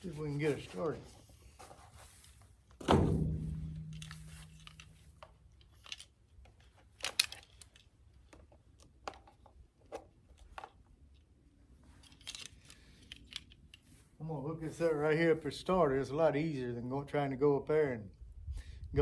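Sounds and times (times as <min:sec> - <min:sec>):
loud ringing thump: 0:02.8 - 0:05.1.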